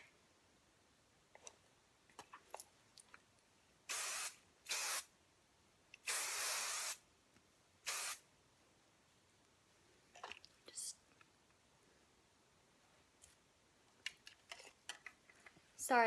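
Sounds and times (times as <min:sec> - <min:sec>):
aerosol spray hissing: 0:03.9 - 0:05.1, 0:06.0 - 0:07.0, 0:07.8 - 0:08.2.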